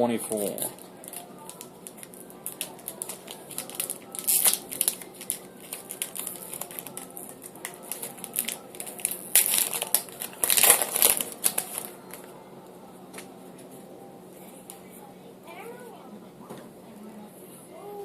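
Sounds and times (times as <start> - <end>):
wrapper crinkling and tearing: 0.4 - 12.3.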